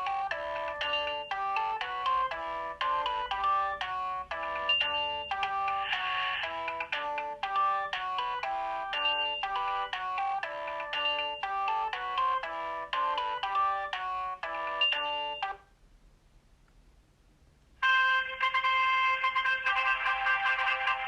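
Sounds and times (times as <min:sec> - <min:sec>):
mobile phone ringtone melody: 0:00.0 - 0:15.6.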